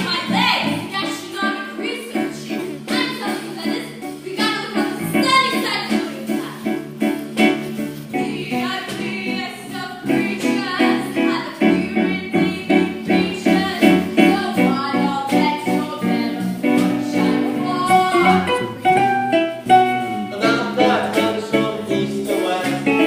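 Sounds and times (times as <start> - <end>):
plucked string accompaniment: 0.0 - 23.0
voices singing: 8.1 - 18.7, 19.9 - 23.0.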